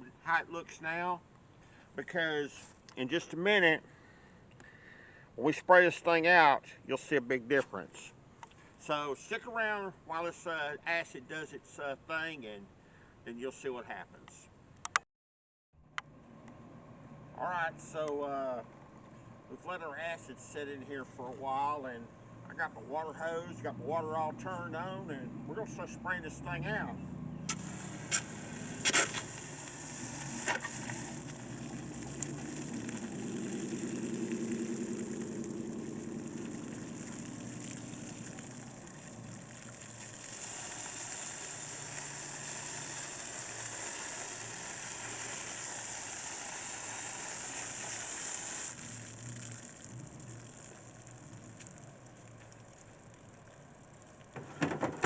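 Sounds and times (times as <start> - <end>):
hose spray hissing: 27.5 - 49.9.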